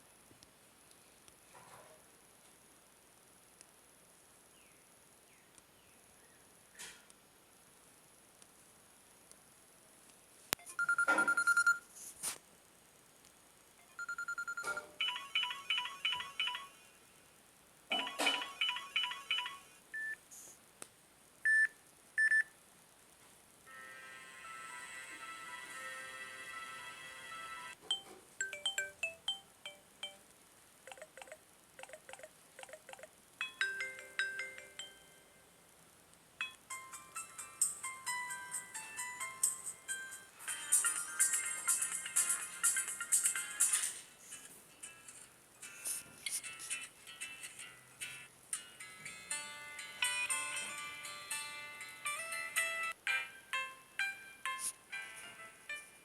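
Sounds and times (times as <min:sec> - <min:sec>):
repeating chiming ringtone notes: 0:14.0 - 0:16.8, 0:17.9 - 0:19.7, 0:27.9 - 0:30.2, 0:30.9 - 0:35.4, 0:36.4 - 0:41.5.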